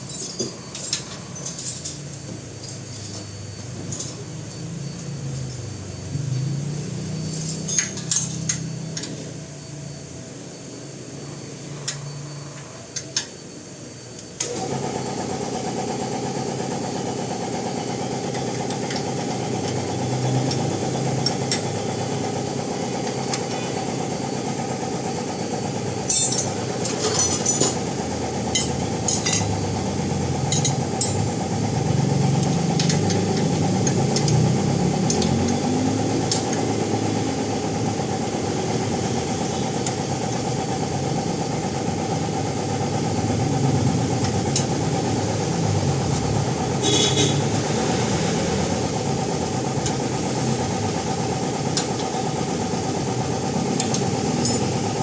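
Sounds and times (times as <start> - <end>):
motor running steadily: 14.2 - 55.0.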